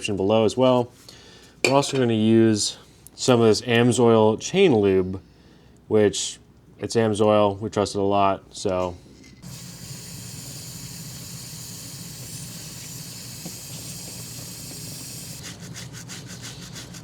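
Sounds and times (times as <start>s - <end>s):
aerosol spray hissing: 9.4s - 15.4s.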